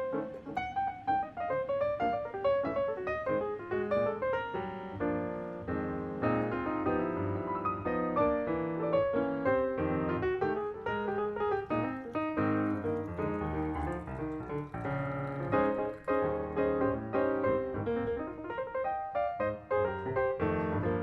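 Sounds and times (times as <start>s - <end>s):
piano music: 0.0s - 21.0s.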